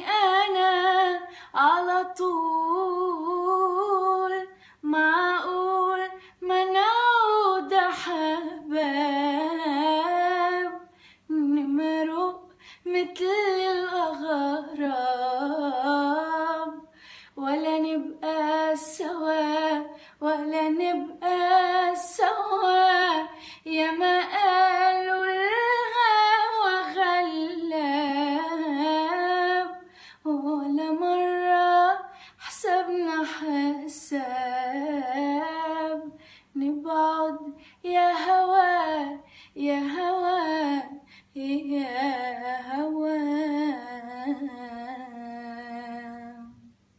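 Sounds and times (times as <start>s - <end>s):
woman singing unaccompanied: 0.0s - 46.7s
singer breathing: 10.9s - 11.3s, 16.9s - 17.4s, 23.3s - 23.7s, 29.8s - 30.3s, 36.2s - 36.6s, 39.2s - 39.6s, 41.0s - 41.4s.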